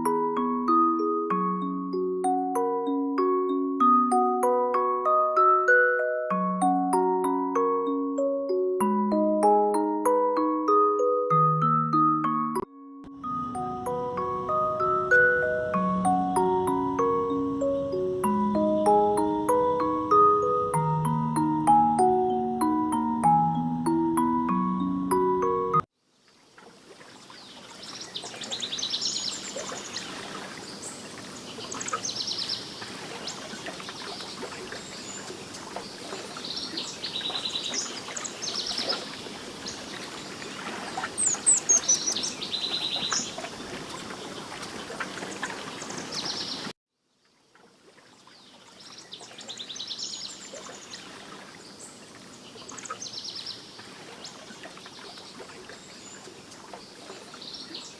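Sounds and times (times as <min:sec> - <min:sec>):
birds singing in high trills: 0:27.3 - 0:46.7.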